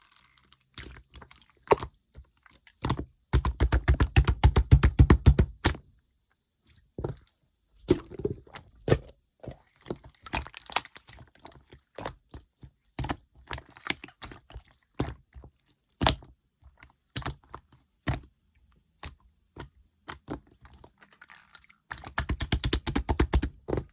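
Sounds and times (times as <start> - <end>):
sticky slime clicks and pops: 3.4 - 5.8.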